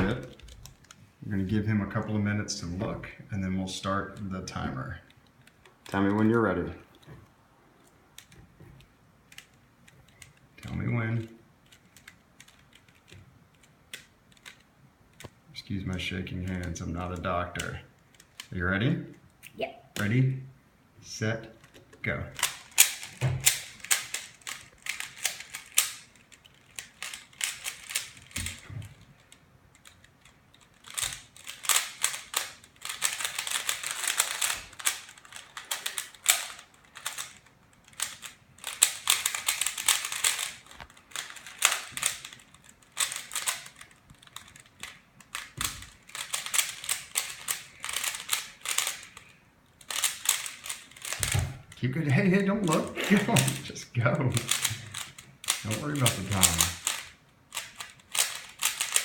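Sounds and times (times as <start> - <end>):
puzzle cube plastic clicking: 5.1 - 6.3, 7.8 - 10.7, 11.6 - 15.4, 16.4 - 18.5, 21.6 - 51.4, 52.6 - 59.0.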